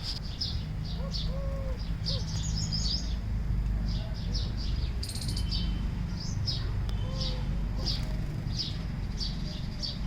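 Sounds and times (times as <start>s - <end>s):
garden birds chirping: 0.0s - 10.0s.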